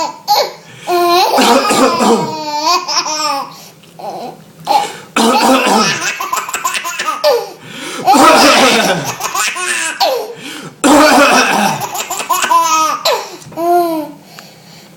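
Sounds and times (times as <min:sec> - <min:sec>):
baby laughing: 0:00.0 - 0:14.2
man coughing: 0:01.3 - 0:02.4, 0:05.2 - 0:06.0, 0:08.0 - 0:09.2, 0:10.8 - 0:11.9.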